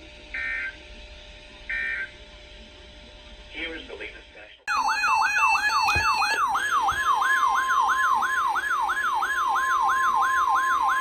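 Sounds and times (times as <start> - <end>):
siren wailing: 4.7 - 11.0
steady alarm tone: 4.7 - 11.0.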